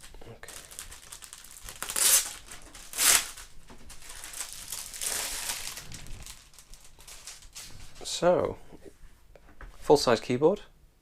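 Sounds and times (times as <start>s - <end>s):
packaging crinkling: 0.0s - 8.1s.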